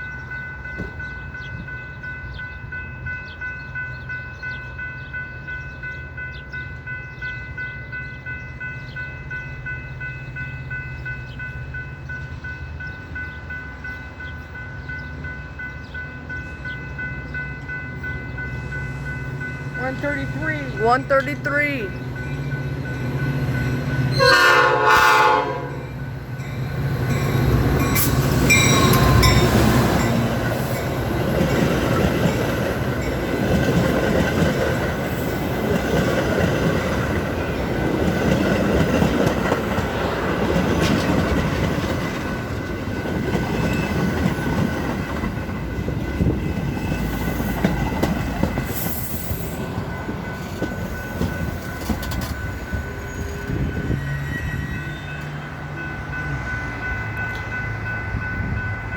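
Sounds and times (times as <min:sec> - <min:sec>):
train wheels rumbling on rails: 0:00.0 - 0:58.9
faint high wheel squeal: 0:53.0 - 0:55.5.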